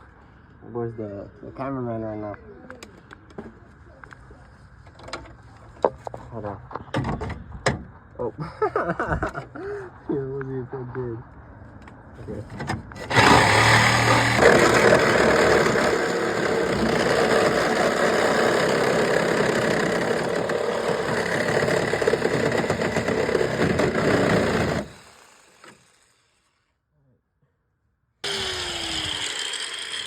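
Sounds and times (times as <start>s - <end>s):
power tool cutting sheet metal: 13.0s - 26.5s, 28.2s - 30.0s.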